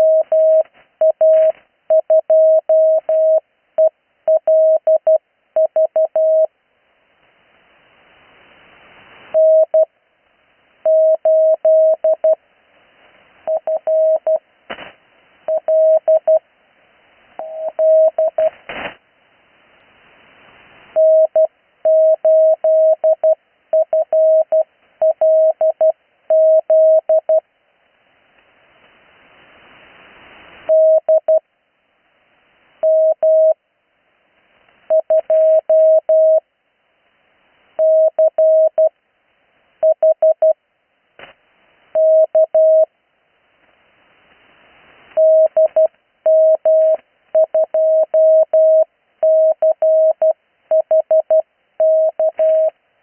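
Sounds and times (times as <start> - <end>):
radio hiss: 0.0 - 1.8, 28.3 - 31.0
morse code tone: 0.0 - 6.5, 9.4 - 9.9, 17.4 - 18.5, 34.9 - 36.4, 42.0 - 42.9, 45.2 - 52.7.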